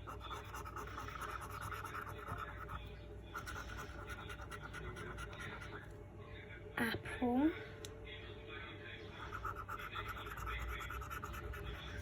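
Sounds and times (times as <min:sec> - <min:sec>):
scratch card being scratched: 0:00.0 - 0:02.8, 0:09.4 - 0:12.0.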